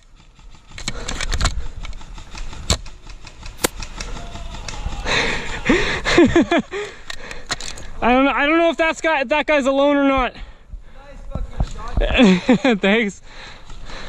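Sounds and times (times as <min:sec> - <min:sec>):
airsoft gun shots: 0:03.6 - 0:03.9.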